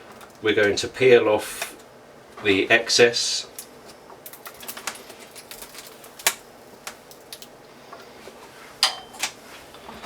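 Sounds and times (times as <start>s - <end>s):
plastic film clicks and crackles: 0.0s - 0.9s, 3.5s - 7.7s
plastic film snaps: 3.5s - 7.6s.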